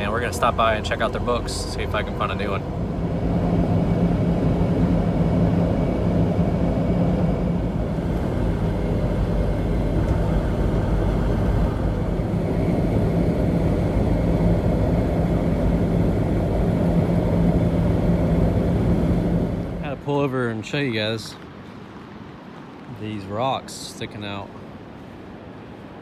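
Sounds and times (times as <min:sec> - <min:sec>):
car interior engine and road hum: 0:00.0 - 0:20.1.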